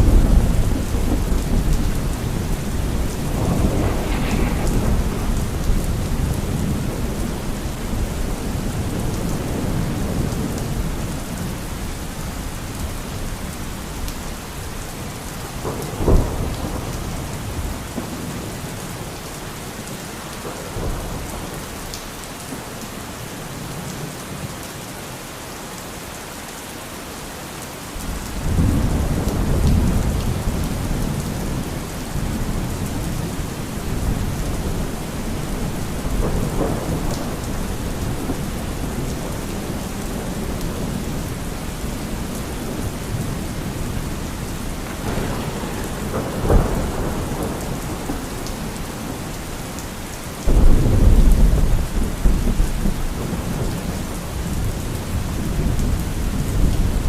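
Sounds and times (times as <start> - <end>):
sharp thunder crack: 0.0 - 10.3, 44.9 - 49.2
rolling thunder: 0.0 - 19.1, 28.0 - 49.8, 50.4 - 57.0
heavy rain: 0.0 - 57.0.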